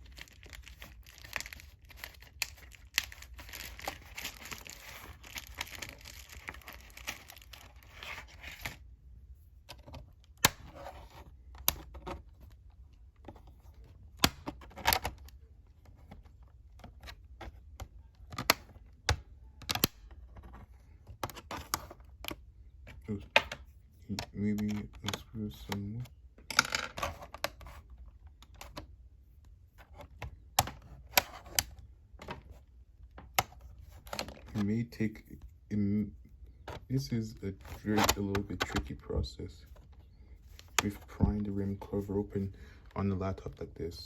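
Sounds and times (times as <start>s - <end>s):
plastic scraping and creaking: 0.0s - 8.8s, 29.8s - 44.0s.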